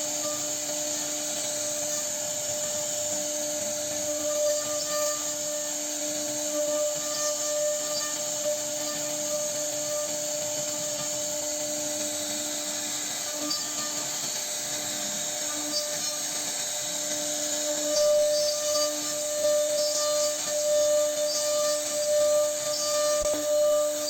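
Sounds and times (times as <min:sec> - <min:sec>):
bit cutting wood hiss: 0:00.0 - 0:24.0
router spindle whine: 0:00.0 - 0:24.0.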